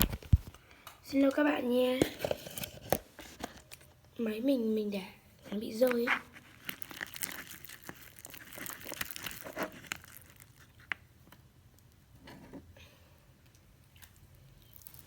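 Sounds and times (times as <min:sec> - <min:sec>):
slime being stirred: 0:05.8 - 0:11.5, 0:13.9 - 0:15.0.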